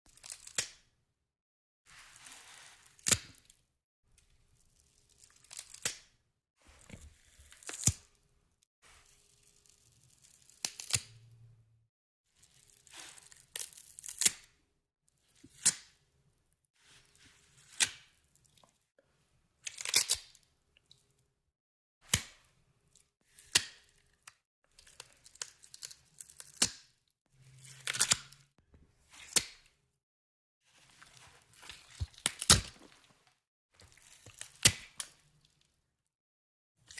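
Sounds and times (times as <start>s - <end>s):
short tearing and cracking noises: 5.0s - 6.1s, 9.4s - 11.2s, 12.5s - 14.6s, 19.7s - 20.4s, 23.4s - 26.9s, 27.6s - 28.5s, 31.6s - 33.1s.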